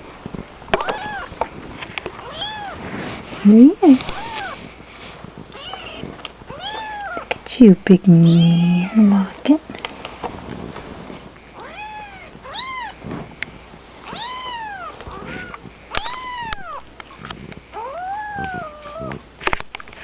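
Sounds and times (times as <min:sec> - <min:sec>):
kitten mewing: 0:08.2 - 0:09.3, 0:14.1 - 0:19.2.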